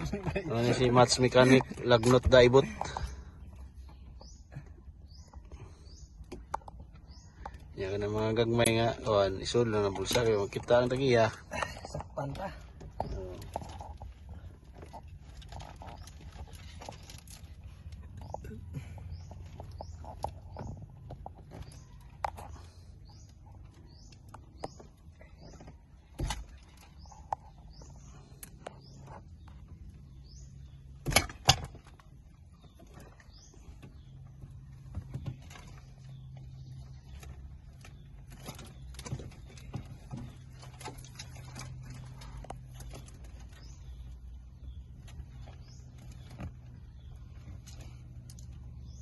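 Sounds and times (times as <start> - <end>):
birds chirping: 0.0 - 49.0.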